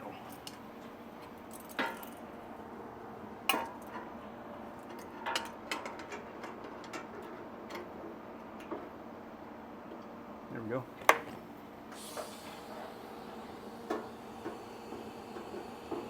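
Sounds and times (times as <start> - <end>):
light metal clinks and knocks: 1.2 - 2.3.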